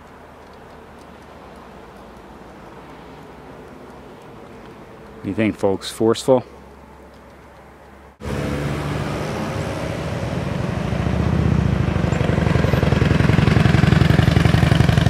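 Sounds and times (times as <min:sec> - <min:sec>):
vehicle engine running: 0:08.2 - 0:15.0.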